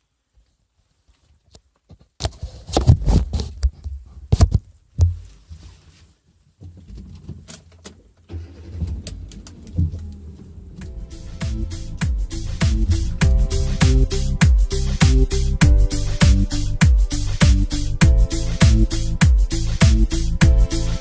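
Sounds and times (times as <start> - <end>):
car engine running: 8.3 - 15.5.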